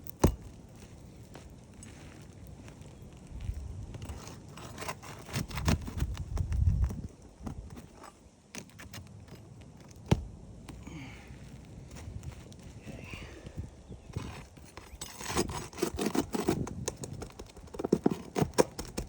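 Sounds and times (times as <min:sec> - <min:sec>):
scrapes on roof shingles: 0:04.0 - 0:09.3, 0:14.1 - 0:19.0.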